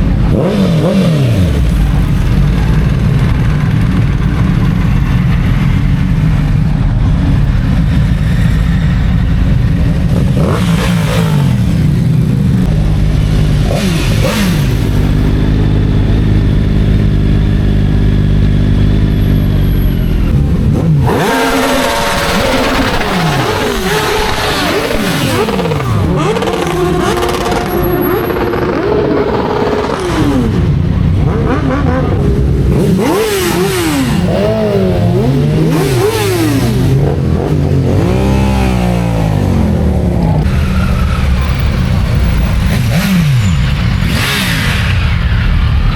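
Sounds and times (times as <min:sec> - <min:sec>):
motorcycles revving and passing: 0:00.0 - 0:45.9.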